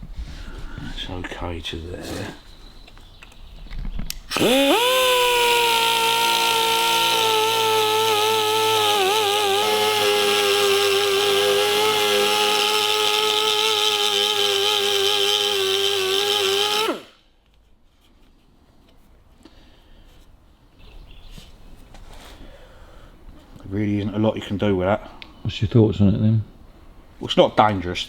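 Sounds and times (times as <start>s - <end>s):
power grinder grinding metal: 4.3s - 17.1s.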